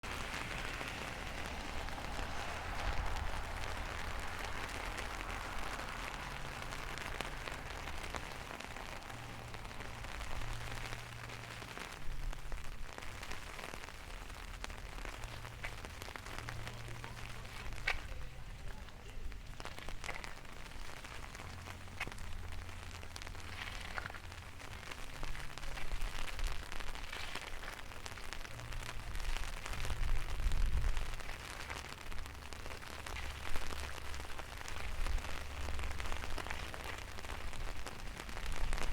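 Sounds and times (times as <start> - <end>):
low rumble: 0.0 - 12.9
sharp raindrop hits: 0.0 - 38.9
steady rain hiss: 0.0 - 38.9.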